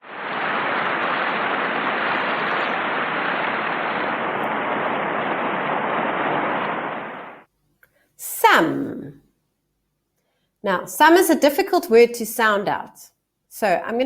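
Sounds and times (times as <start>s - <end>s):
static-like hiss: 0.0s - 7.5s.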